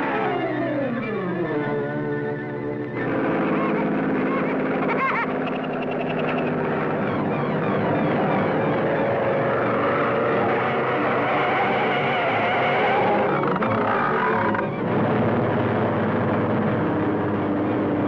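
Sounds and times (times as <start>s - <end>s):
whistle-like pitch glides: 0.1s - 4.5s, 5.3s - 14.9s
cartoon propeller airplane engine: 0.1s - 18.0s.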